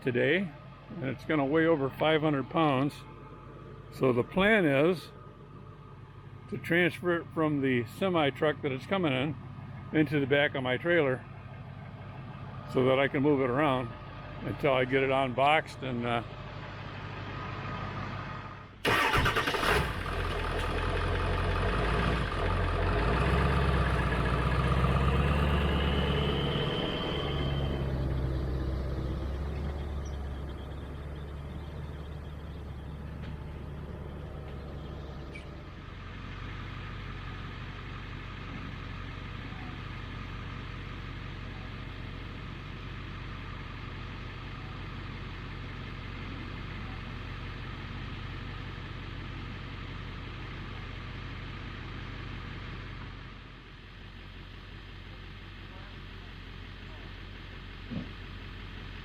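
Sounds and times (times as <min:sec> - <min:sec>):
vehicle engine running: 0:00.0 - 0:59.0
short rising whine: 0:25.0 - 0:35.6.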